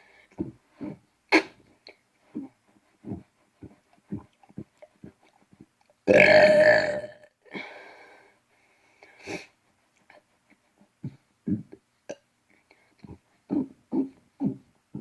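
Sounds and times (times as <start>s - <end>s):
person burping: 6.1s - 7.2s.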